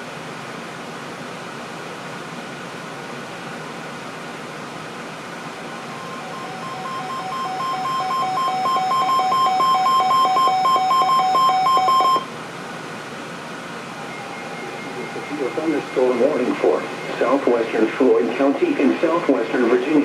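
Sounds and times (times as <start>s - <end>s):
two-tone alarm beeping: 5.8s - 12.3s, 14.0s - 17.7s
radio hiss: 13.8s - 20.0s.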